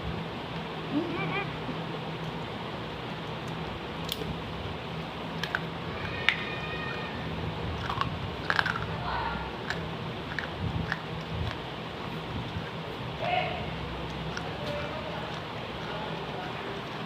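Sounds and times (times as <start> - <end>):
steady low hum: 0.0 - 17.0
clay cup being chewed: 7.7 - 9.0, 9.6 - 12.9, 14.0 - 17.0.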